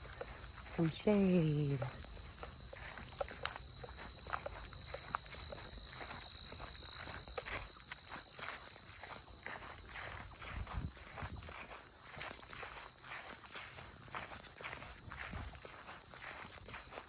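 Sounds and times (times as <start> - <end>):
crickets chirring: 0.0 - 17.0
footsteps crunching on trail: 0.0 - 17.0.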